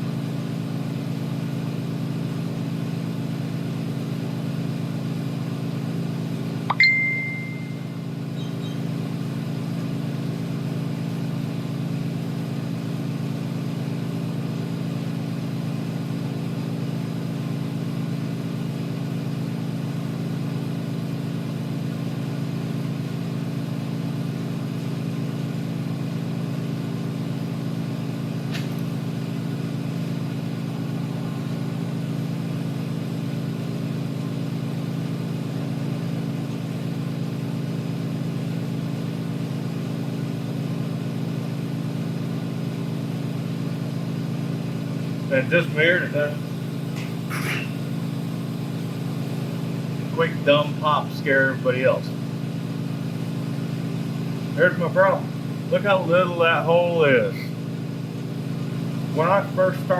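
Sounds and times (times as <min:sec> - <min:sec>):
high ringing ping: 0:06.7 - 0:08.9.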